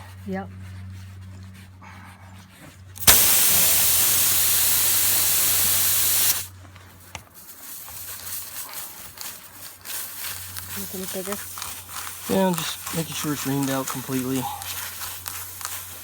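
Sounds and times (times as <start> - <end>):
air hissing from a tire: 3.0 - 6.5.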